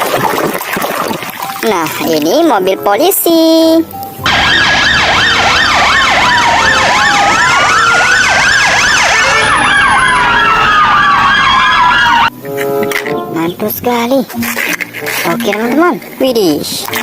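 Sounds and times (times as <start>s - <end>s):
electronic siren wail: 4.2s - 12.3s
electronic siren yelp: 4.2s - 12.3s.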